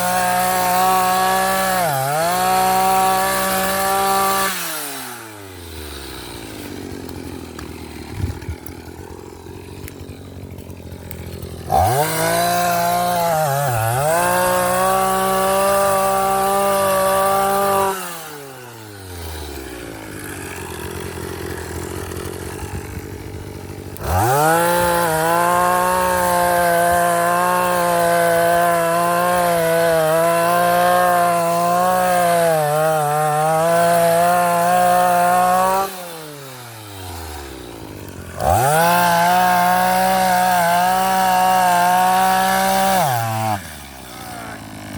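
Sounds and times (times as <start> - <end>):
earth auger engine revving: 0.0 - 44.9.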